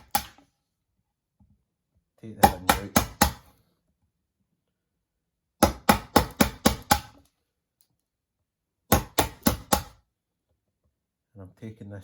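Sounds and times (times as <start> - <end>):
wood chisel being struck: 0.0 - 0.4, 2.4 - 3.5, 5.6 - 7.2, 8.9 - 10.0.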